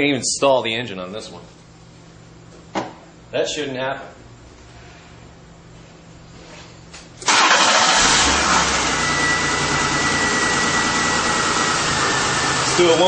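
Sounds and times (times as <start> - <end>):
car engine cranking and idling: 7.2 - 13.0.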